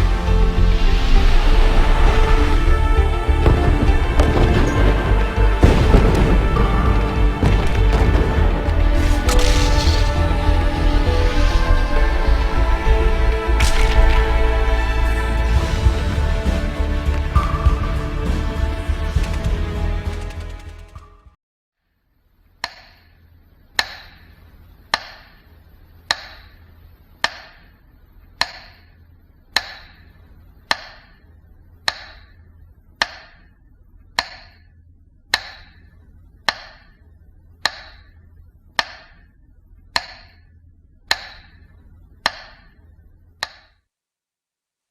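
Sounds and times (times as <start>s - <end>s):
faint low hum: 21.9s - 43.5s.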